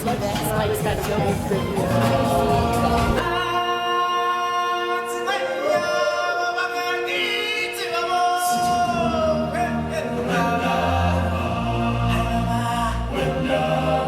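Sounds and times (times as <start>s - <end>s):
low bass voices: 0.0s - 3.5s, 8.6s - 14.0s
choir singing long held notes: 0.6s - 14.0s.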